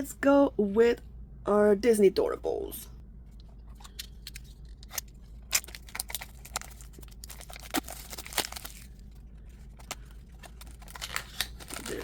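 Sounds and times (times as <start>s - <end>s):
toy packaging clicks and crinkles: 3.8s - 12.0s.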